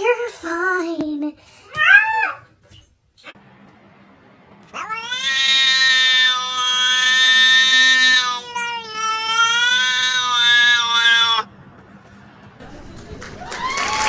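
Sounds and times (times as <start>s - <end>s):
cat yowling: 1.7s - 2.4s, 4.8s - 11.5s
cat meowing: 4.8s - 11.5s.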